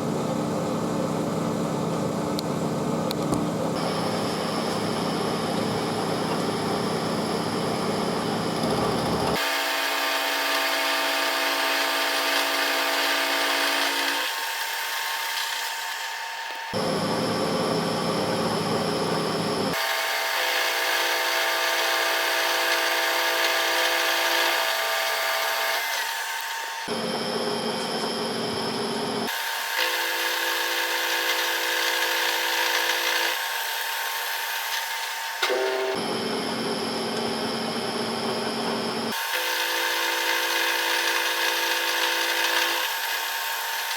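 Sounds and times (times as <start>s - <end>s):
lathe whirring and cutting: 3.8s - 43.9s.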